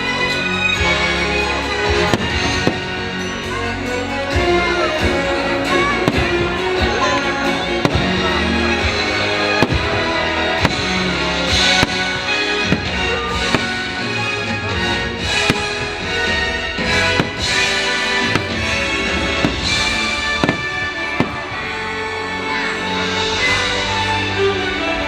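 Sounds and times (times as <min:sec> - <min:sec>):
soundtrack music playing: 0:00.0 - 0:25.0
sharp firework bangs: 0:02.1 - 0:03.3, 0:05.9 - 0:14.2, 0:15.2 - 0:21.6.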